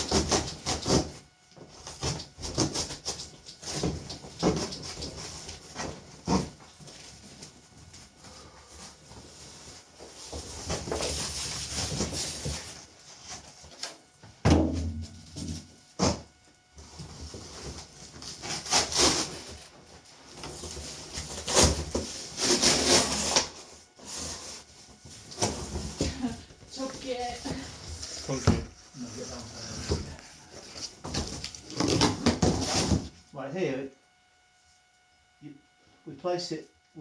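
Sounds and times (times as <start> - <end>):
packaging scraping and rustling: 16.9 - 26.0.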